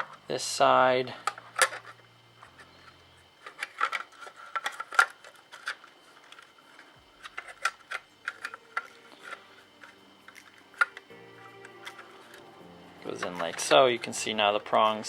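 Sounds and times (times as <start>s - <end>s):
plastic housing clicks and scraping: 1.2s - 14.2s.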